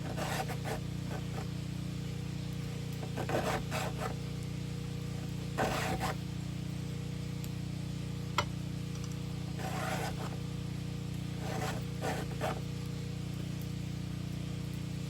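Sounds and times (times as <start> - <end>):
steady low hum: 0.0 - 15.0
file scraping chainsaw chain: 3.0 - 4.2, 5.6 - 6.2, 9.6 - 10.4, 11.4 - 12.6.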